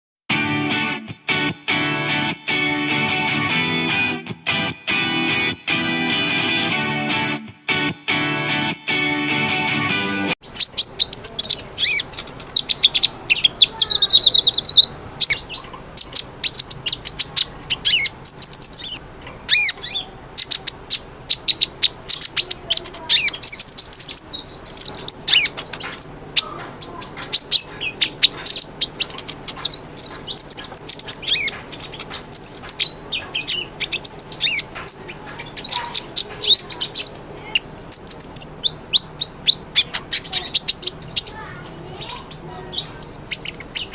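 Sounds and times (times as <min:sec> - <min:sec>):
bird chirping and trilling: 0:10.4 - 0:43.9.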